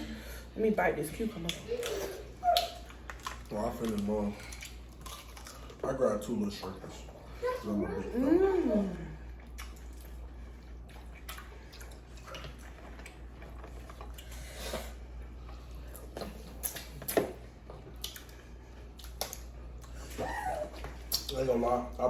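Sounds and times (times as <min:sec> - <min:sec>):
steady low hum: 0:00.0 - 0:22.0
wet chewing smacks and clicks: 0:01.3 - 0:06.8, 0:09.3 - 0:14.4, 0:15.4 - 0:21.6.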